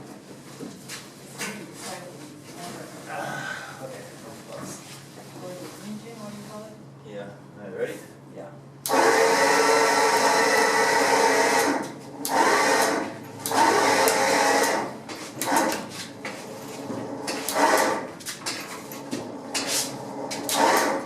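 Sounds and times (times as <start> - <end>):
small electric motor running: 8.9 - 15.9, 19.9 - 21.0.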